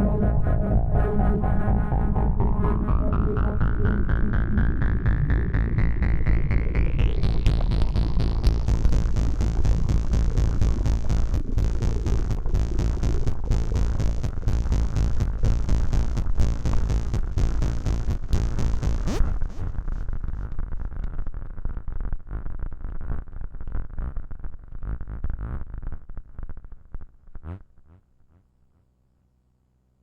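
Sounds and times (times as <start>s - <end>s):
rapid pulsing synth noise: 0.0s - 20.5s.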